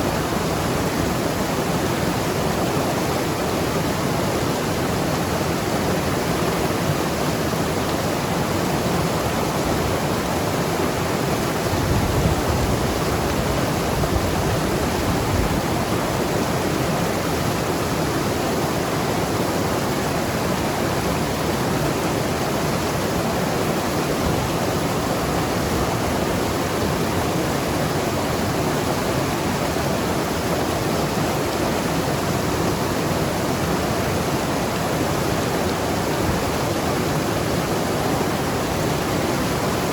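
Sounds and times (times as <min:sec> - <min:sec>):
river rushing over rocks: 0:00.0 - 0:39.9.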